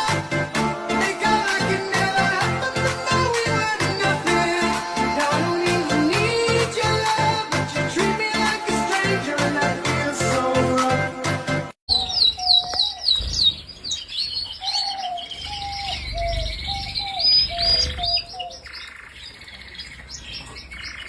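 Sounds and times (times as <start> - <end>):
small birds chirping: 1.2 - 6.5, 11.9 - 21.0
lower repeated bird call: 11.9 - 21.0.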